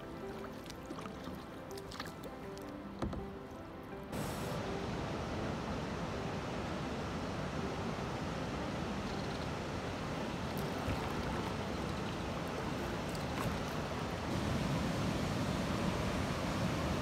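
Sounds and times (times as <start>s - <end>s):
lake water lapping: 0.0s - 4.6s, 9.5s - 16.8s
faint knocks: 3.0s - 3.4s.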